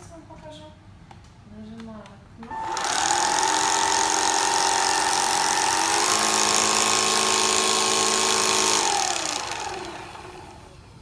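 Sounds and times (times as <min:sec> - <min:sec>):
stick vacuum motor whine: 0:02.5 - 0:11.0.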